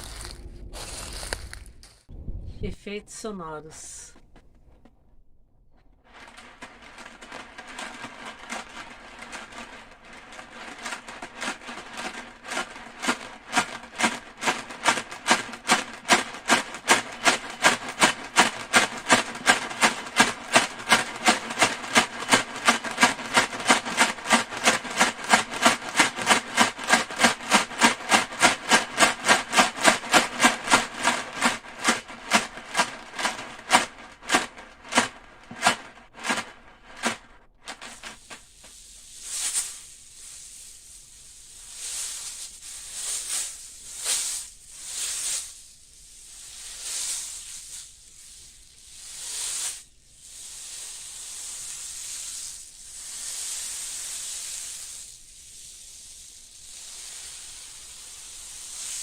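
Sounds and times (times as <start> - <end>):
rhythmic sharp knocks: 10.8 - 38.2.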